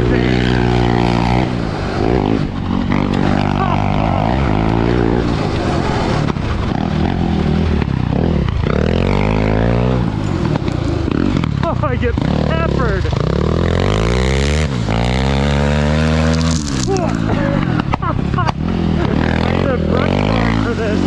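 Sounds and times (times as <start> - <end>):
quad engine revving: 0.0 - 21.0.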